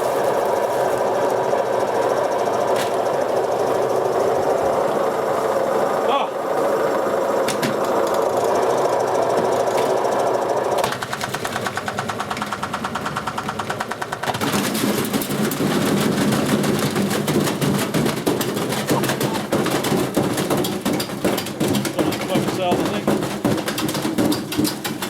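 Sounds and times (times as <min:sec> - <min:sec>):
unbalanced washing machine knocking: 0:07.4 - 0:10.1, 0:10.8 - 0:25.0.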